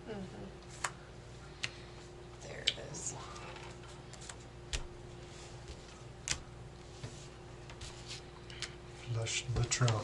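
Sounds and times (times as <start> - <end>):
playing cards laid on a table: 3.4 - 10.0.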